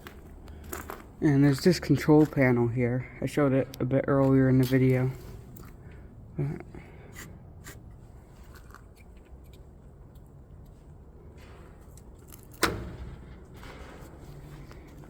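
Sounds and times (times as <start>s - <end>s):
footsteps on debris: 0.0s - 6.1s.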